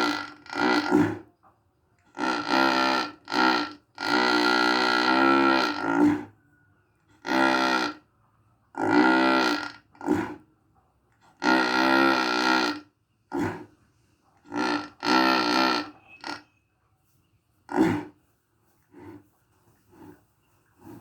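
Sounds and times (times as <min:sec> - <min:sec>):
cow snoring: 0:00.0 - 0:01.4, 0:02.0 - 0:06.4, 0:07.1 - 0:08.0, 0:08.7 - 0:10.5, 0:11.2 - 0:16.5, 0:17.7 - 0:18.2, 0:18.8 - 0:21.0.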